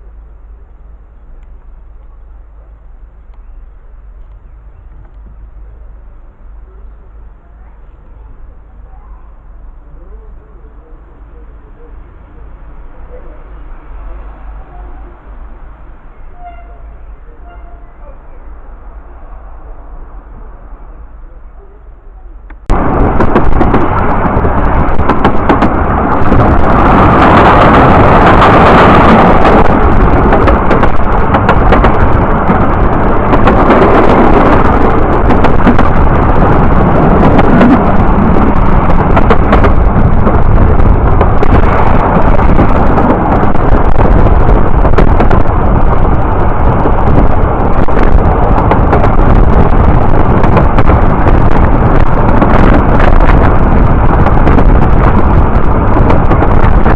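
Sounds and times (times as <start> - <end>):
moving train rumble: 0.0 - 56.9
wind buffeting the microphone: 0.0 - 56.9
crackles: 22.4 - 56.9.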